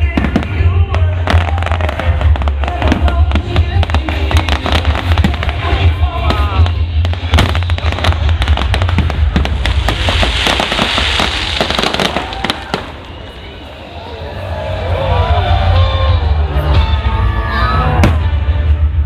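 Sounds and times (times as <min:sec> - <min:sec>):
fireworks cracks and bangs: 0:00.0 - 0:13.7
heavy low rumble: 0:00.0 - 0:19.0
fizzing crackle: 0:09.7 - 0:12.7.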